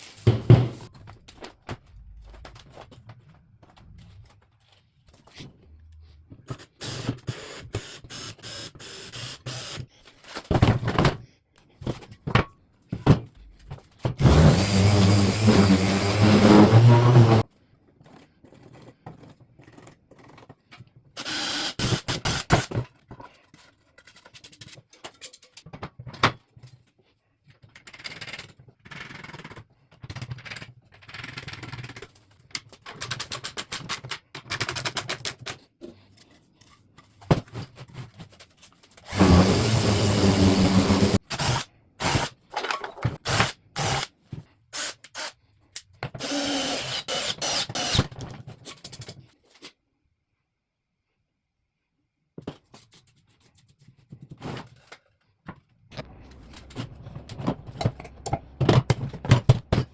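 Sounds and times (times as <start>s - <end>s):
power tool motor running: 14.2s - 17.4s, 39.1s - 41.6s
tools knocking and scraping: 42.4s - 43.2s, 54.1s - 59.9s.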